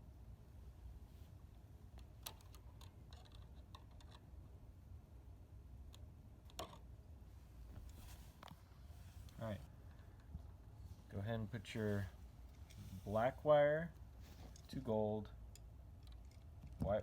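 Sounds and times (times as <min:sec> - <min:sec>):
hand tools and wire clicking: 0:01.9 - 0:04.3, 0:14.4 - 0:17.0.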